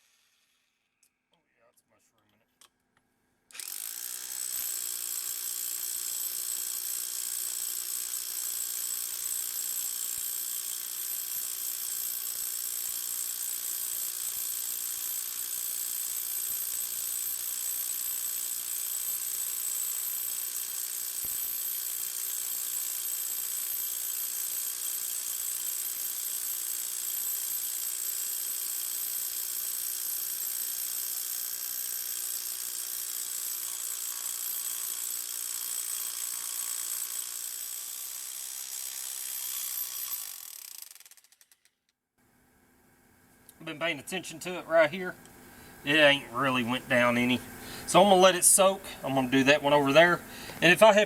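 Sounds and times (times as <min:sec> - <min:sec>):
rotary hammer running: 0:03.5 - 0:41.6.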